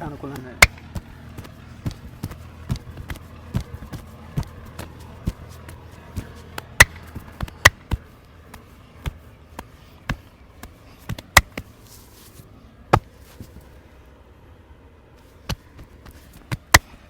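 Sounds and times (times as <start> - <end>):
hands slapping on body: 0.3 - 11.8.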